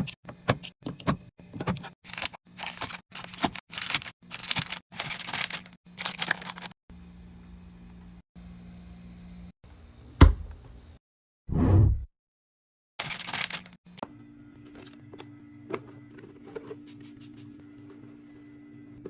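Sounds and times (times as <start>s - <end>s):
packaging rustling: 2.0s - 6.7s, 13.0s - 13.7s.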